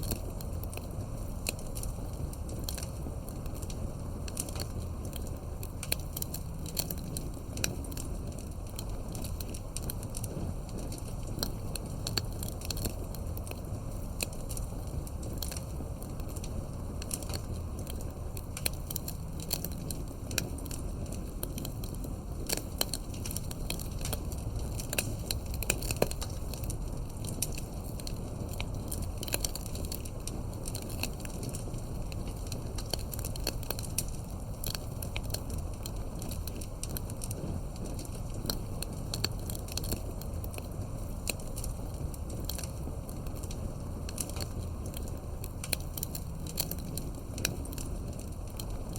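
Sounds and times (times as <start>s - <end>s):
burning wood popping and snapping: 0.0s - 48.9s
low fire rumble: 0.0s - 48.9s.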